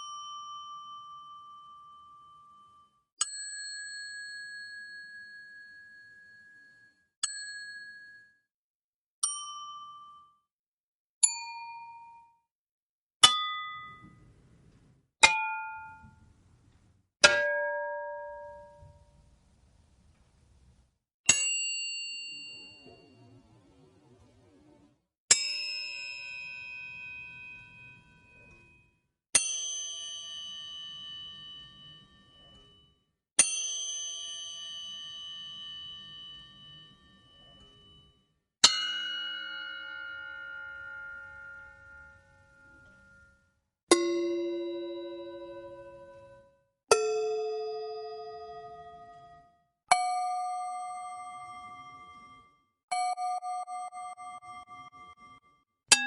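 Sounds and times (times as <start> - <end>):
struck bell ding: 15.2 - 16.2, 17.2 - 19.1, 38.6 - 43.3
small bell ringing: 21.3 - 23.1, 25.4 - 46.1.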